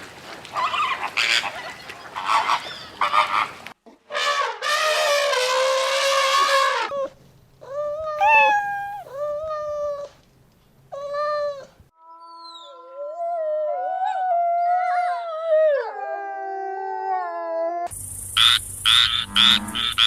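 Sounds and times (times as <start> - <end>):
short animal cries: 8.2 - 9.1.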